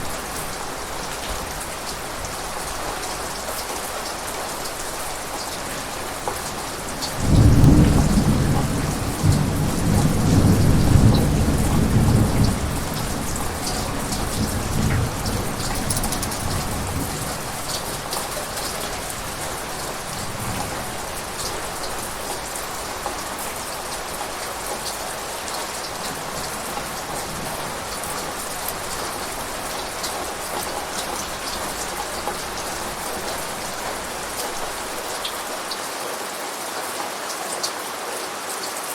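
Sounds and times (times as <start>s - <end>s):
steady rain falling: 0.0s - 38.9s
thunder rumbling: 4.8s - 35.6s.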